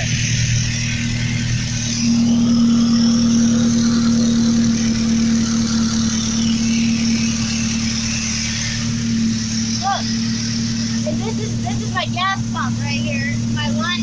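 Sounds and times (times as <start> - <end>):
truck engine idling: 0.0 - 14.0.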